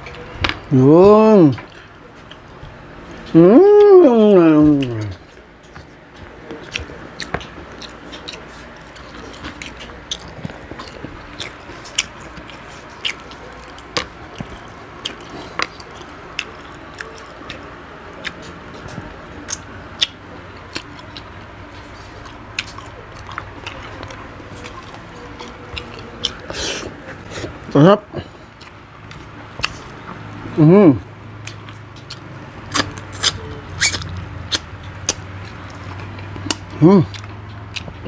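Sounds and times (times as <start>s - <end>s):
crunchy chewing: 1.5s - 3.3s, 4.7s - 38.0s
wet mouth clicks: 31.5s - 38.0s.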